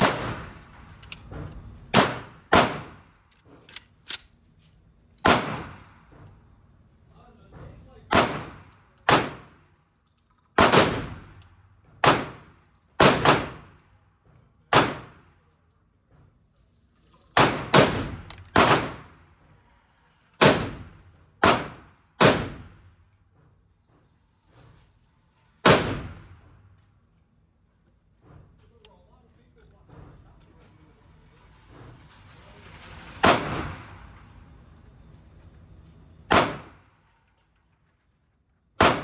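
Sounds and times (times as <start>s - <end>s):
gunshots with echo: 0.0s - 0.8s, 2.0s - 3.0s, 5.3s - 6.0s, 8.1s - 9.5s, 10.6s - 11.4s, 12.0s - 13.7s, 14.7s - 15.2s, 17.4s - 19.2s, 20.4s - 22.7s, 25.6s - 26.3s, 33.2s - 34.0s, 36.3s - 36.8s, 38.8s - 39.0s.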